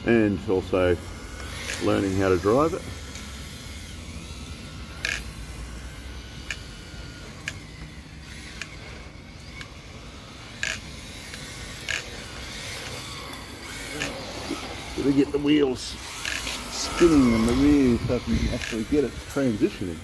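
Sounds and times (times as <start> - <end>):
toy car running noise: 0.2 - 20.0
sharp tire squeaks: 10.4 - 18.8.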